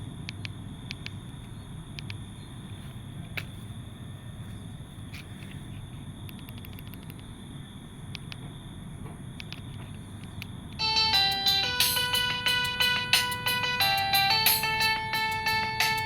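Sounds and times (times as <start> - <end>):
low background hum and hiss: 0.0 - 16.0
polyphonic phone ringtone: 10.8 - 16.0.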